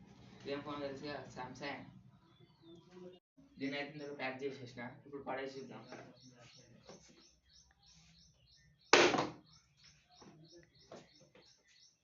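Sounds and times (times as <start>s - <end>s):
birds chirping: 0.3s - 12.0s
phone hitting the ground thud: 9.0s - 9.4s.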